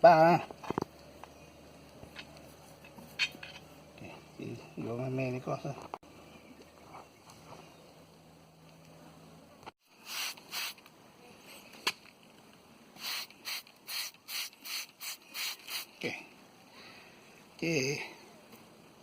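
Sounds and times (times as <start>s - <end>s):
spray bottle spritzing: 10.0s - 10.8s, 13.0s - 16.0s.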